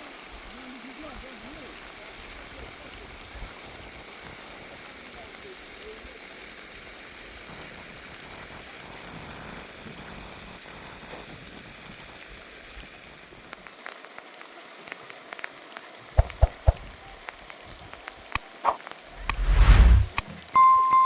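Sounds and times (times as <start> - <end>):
rain hissing: 18.6 - 20.4.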